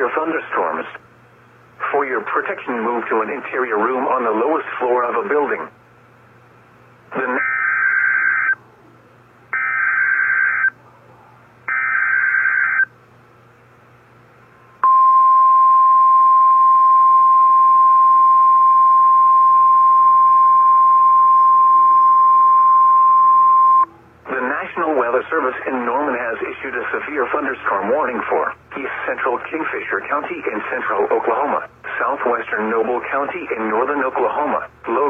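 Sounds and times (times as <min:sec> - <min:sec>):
steady warning alarm tone: 0:09.6 - 0:10.8, 0:11.7 - 0:12.9.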